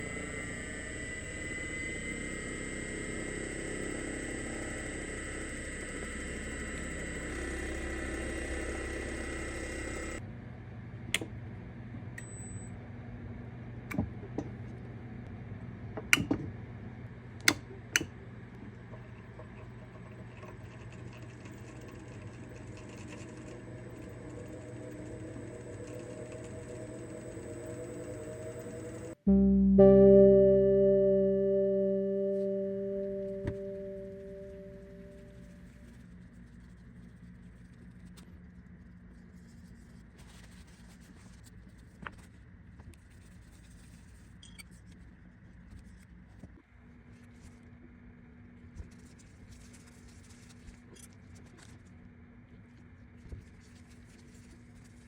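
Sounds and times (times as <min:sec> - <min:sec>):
lathe motor whining: 0:00.0 - 0:10.2, 0:21.5 - 0:29.2.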